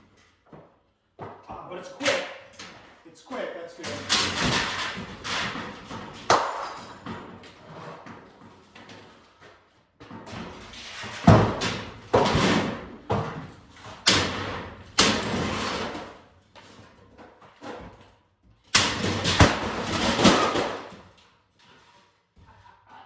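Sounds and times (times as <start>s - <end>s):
demolition knocks and clatters: 1.2s - 21.2s.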